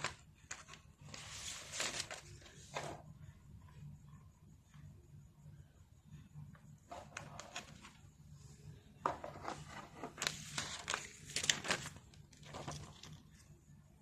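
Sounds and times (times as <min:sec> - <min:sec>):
packaging crinkling and rustling: 0:00.0 - 0:02.4, 0:10.0 - 0:13.2.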